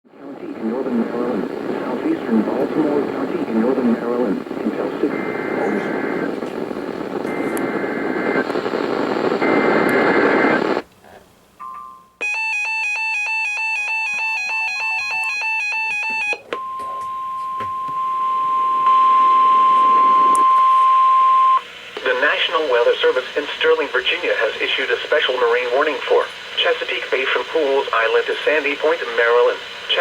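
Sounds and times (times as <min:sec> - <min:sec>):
hissing static: 0:00.1 - 0:10.9, 0:18.1 - 0:30.0
steady warning alarm tone: 0:12.2 - 0:21.6.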